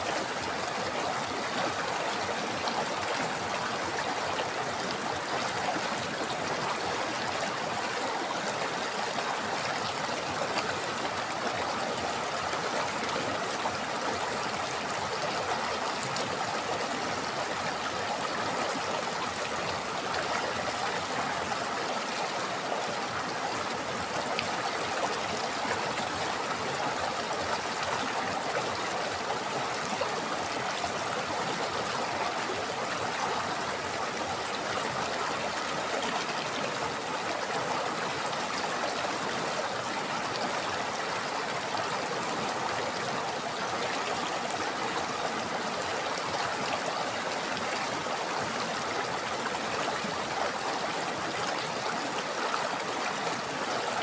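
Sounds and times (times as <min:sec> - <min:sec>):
river water flowing over rocks: 0:00.0 - 0:54.0.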